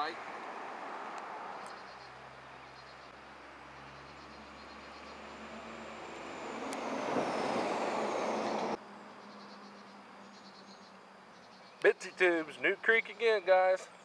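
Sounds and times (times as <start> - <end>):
vehicle passing: 0.0 - 8.8
high whine falling in pitch: 3.2 - 8.8.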